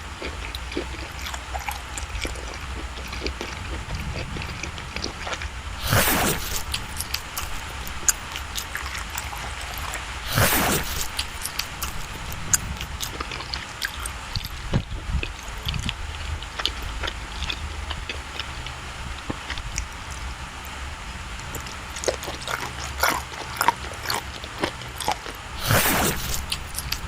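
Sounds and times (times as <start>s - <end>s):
mouth clicks and lip smacks: 0.2s - 20.8s, 21.4s - 27.0s
short rush of noise: 5.8s - 8.4s, 10.2s - 13.0s, 25.6s - 27.0s.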